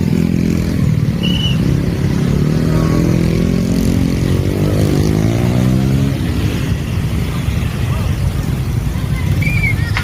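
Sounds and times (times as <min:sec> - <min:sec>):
vehicle engine revving: 0:00.0 - 0:07.2.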